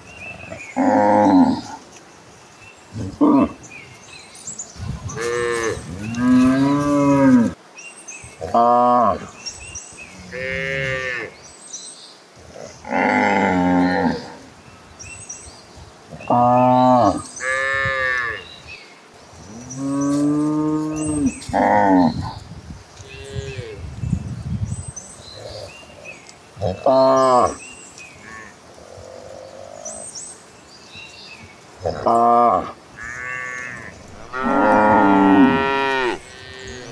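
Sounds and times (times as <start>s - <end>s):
cattle mooing: 5.1s - 7.6s, 31.8s - 36.9s.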